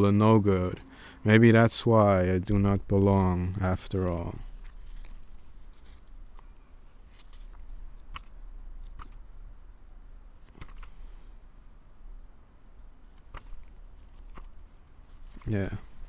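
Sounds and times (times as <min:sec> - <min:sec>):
small animal squeaking: 0:04.1 - 0:06.8, 0:07.6 - 0:09.2, 0:14.4 - 0:15.9.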